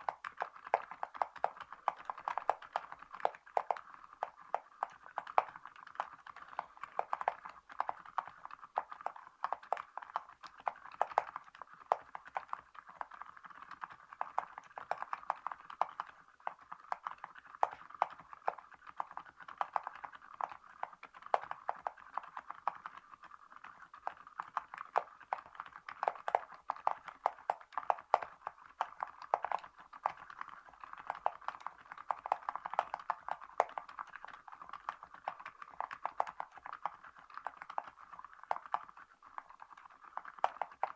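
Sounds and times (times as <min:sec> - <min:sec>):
fast typing on mechanical keyboard: 0:00.0 - 0:40.9.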